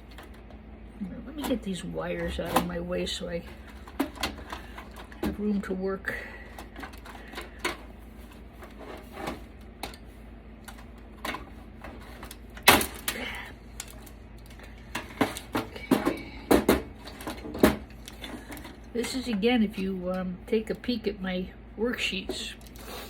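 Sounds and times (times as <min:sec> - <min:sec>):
wires and plastic connectors clicking: 0:10.6 - 0:20.2.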